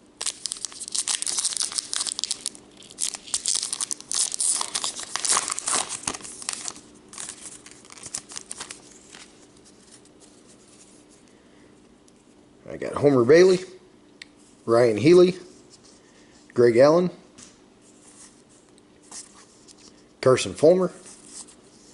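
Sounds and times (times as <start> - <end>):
plastic wrapper tearing and crinkling: 0.2 - 10.0.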